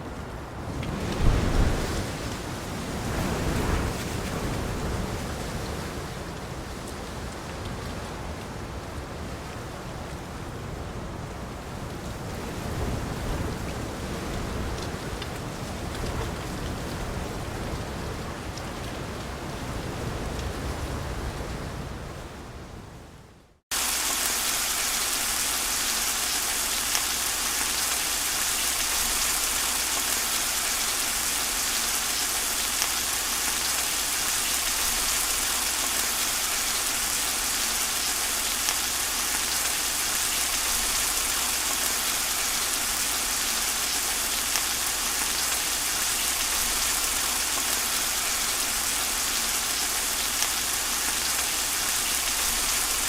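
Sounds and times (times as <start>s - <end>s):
steady rain hiss: 0.0s - 53.0s
faint raindrop ticks: 6.3s - 9.2s, 11.8s - 20.6s, 26.0s - 53.0s.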